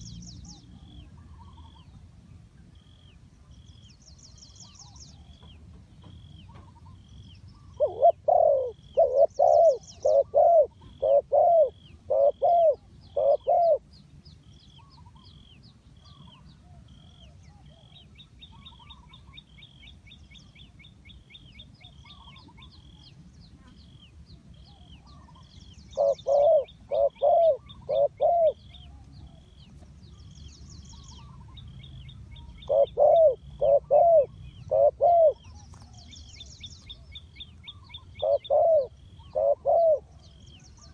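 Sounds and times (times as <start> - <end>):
small bird chirping: 2.8 - 40.9
dove cooing: 7.6 - 13.8, 24.7 - 29.5, 32.4 - 36.1, 37.7 - 40.9
high bird trills: 24.8 - 29.5, 37.7 - 40.3.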